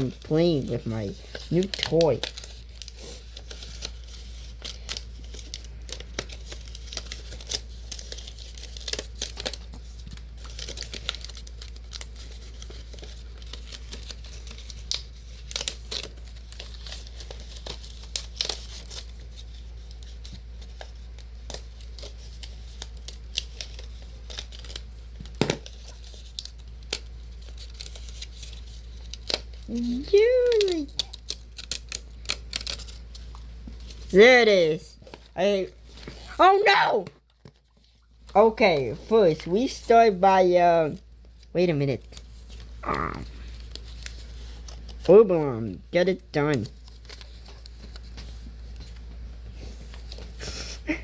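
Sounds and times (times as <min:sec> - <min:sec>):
paper tearing and rustling: 0:00.0 - 0:51.0
card snap: 0:25.4 - 0:25.7.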